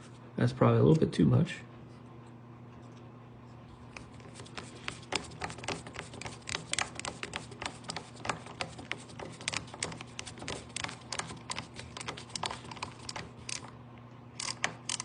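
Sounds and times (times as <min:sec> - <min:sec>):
screw clicking and creaking into wood: 0:14.4 - 0:15.0.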